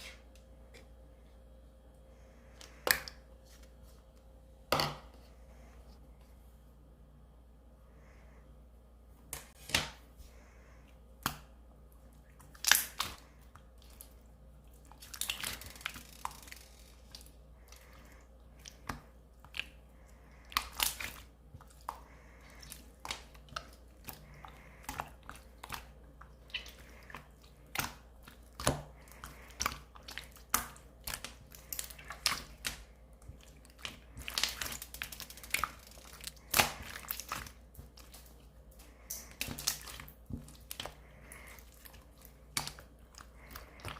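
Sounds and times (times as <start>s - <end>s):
slime squished by hand: 12.2s - 43.9s.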